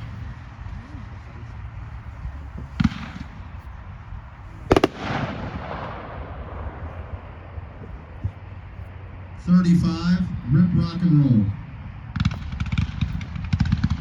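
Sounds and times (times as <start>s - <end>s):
fireworks banging: 1.8s - 8.5s, 12.1s - 14.0s.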